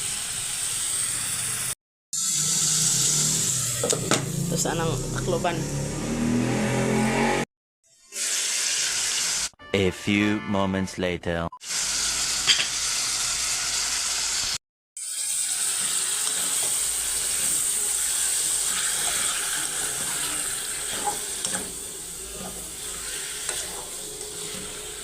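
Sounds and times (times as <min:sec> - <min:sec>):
liver sizzling in a pan: 0:11.6 - 0:25.0.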